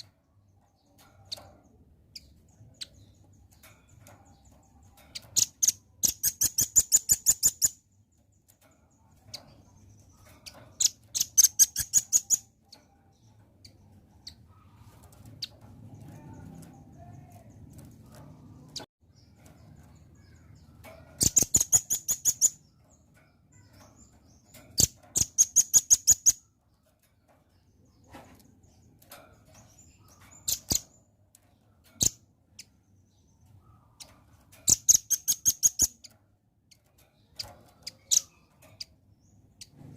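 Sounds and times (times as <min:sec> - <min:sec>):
nuthatch trilling chips: 0:04.3 - 0:07.9, 0:10.1 - 0:12.8, 0:20.2 - 0:22.7, 0:33.9 - 0:36.1.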